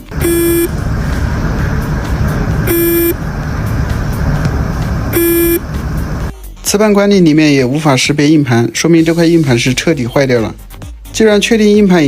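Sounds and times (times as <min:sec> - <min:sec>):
hard drive buzzing beep: 0:00.0 - 0:00.8, 0:02.6 - 0:03.3, 0:05.0 - 0:06.3
steady low noise: 0:00.0 - 0:06.3.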